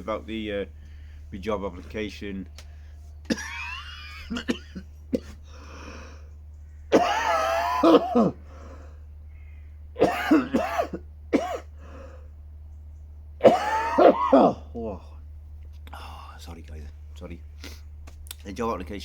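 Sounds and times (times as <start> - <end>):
man coughing: 3.3 - 6.0, 6.9 - 8.5, 10.0 - 11.8, 13.4 - 15.0.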